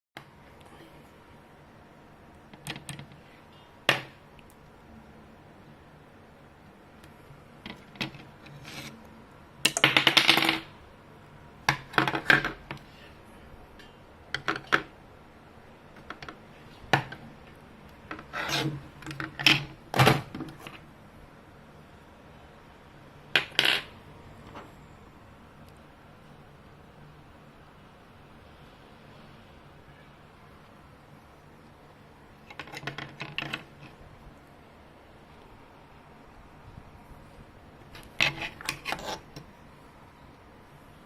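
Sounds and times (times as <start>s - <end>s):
tools scraping: 7.7s - 9.0s, 18.1s - 19.7s, 37.9s - 39.5s.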